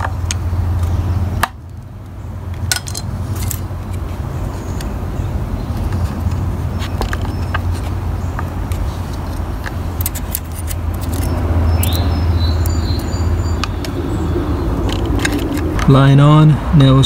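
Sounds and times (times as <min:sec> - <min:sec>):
steady low hum: 0:00.0 - 0:17.0
tools and plastic parts clicking: 0:02.6 - 0:04.0, 0:05.8 - 0:12.0, 0:14.9 - 0:15.8.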